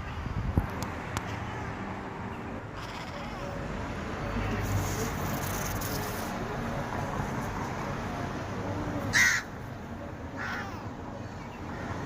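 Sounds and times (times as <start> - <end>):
harsh animal calls: 2.7 - 3.6.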